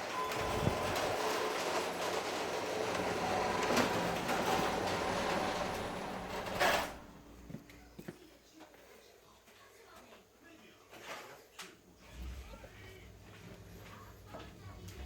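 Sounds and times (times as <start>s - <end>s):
garage door clunk: 0.0s - 7.3s
garage door opener rumble and rattle: 0.0s - 7.3s.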